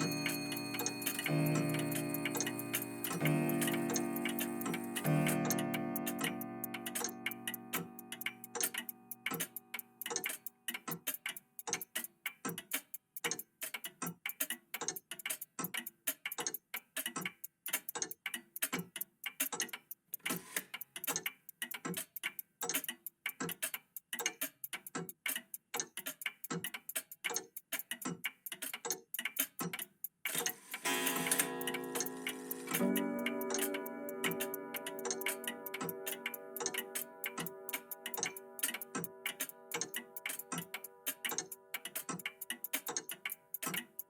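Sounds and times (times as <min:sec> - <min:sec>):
mechanical clocks ticking: 0:00.0 - 0:44.0.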